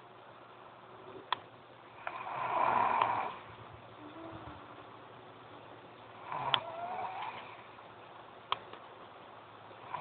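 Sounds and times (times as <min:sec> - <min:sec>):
faint low hiss: 0:00.0 - 0:10.0
soft breath: 0:02.1 - 0:04.8.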